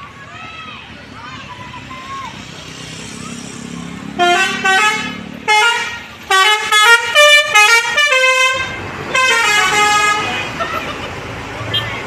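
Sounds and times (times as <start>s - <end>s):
multi-tone bus horn tune: 4.1s - 10.6s.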